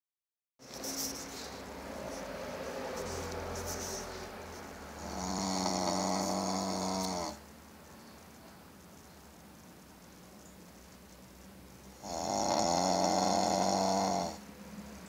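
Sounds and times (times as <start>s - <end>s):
dog snoring: 4.9s - 7.4s, 12.0s - 14.4s.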